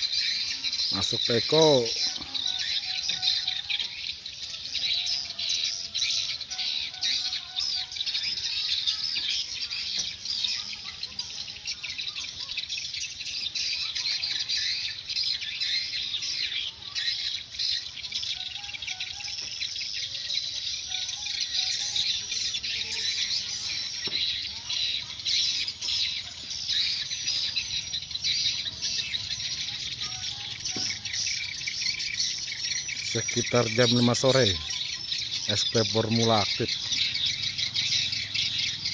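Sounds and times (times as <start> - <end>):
swiftlets twittering: 20.8 - 38.9.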